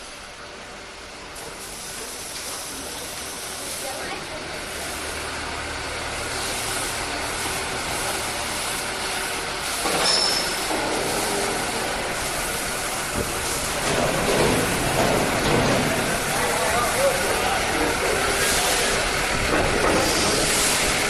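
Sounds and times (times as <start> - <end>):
mechanical rumble and hiss: 0.0 - 21.0
high squeal: 10.0 - 10.6.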